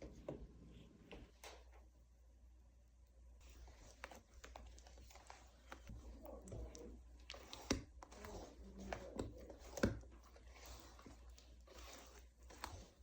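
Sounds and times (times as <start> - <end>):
scrub squishing and scraping: 3.4 - 13.0.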